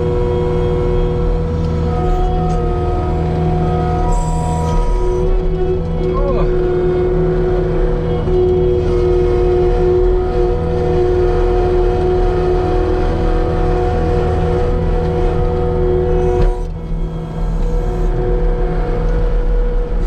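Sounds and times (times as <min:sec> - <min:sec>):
diesel engine running under load: 0:00.0 - 0:20.0
steady whine: 0:00.0 - 0:20.0.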